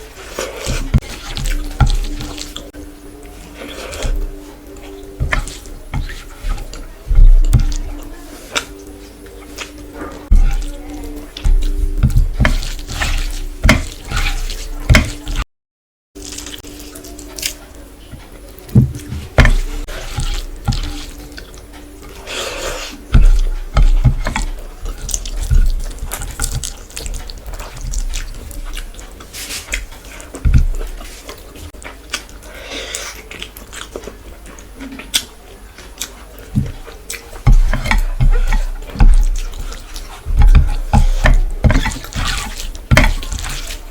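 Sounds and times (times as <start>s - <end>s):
chewing and mouth smacking: 0.0s - 15.2s, 16.2s - 43.9s
wet slurping: 19.3s - 35.3s, 36.8s - 43.9s
low thumps: 23.1s - 27.2s.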